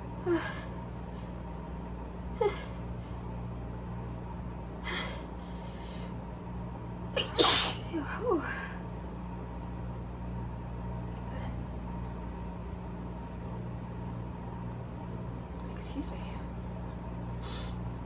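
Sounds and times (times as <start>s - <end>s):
woman sneezing: 7.2s - 8.5s
woman inhaling: 17.4s - 17.8s.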